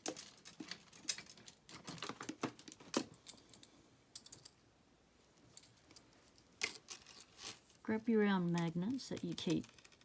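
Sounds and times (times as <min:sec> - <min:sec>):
small objects clicking on bench: 0:00.0 - 0:04.6, 0:08.5 - 0:10.0.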